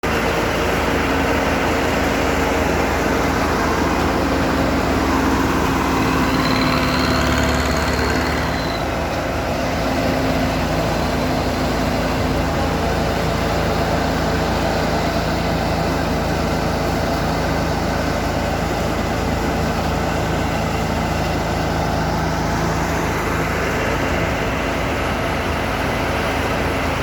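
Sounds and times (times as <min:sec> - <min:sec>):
diesel engine running: 0:00.0 - 0:27.0.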